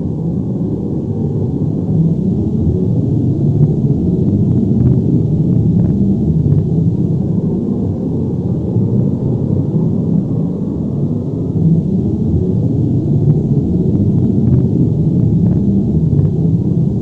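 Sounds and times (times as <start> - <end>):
deep continuous rumble: 0.0 - 17.0.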